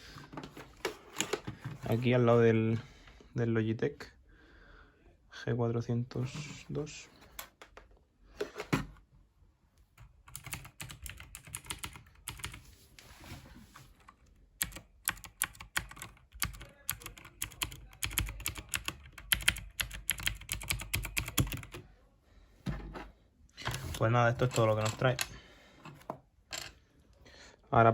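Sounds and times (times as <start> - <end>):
mechanical keyboard clicks: 10.3 - 12.6, 14.6 - 21.8.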